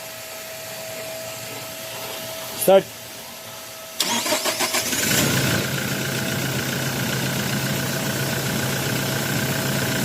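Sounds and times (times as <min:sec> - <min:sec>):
diesel engine idling: 0:04.0 - 0:10.0.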